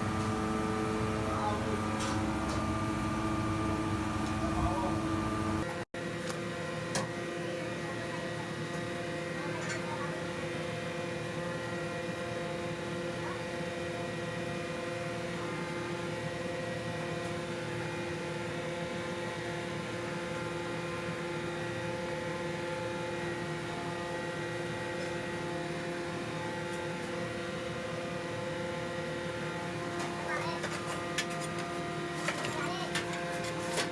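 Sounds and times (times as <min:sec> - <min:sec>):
motor hum: 0:00.0 - 0:05.7.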